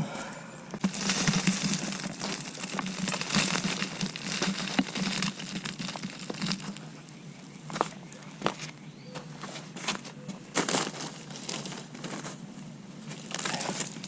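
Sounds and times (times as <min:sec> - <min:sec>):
plastic bag of mulch crinkling: 0:00.7 - 0:07.2, 0:10.5 - 0:14.0.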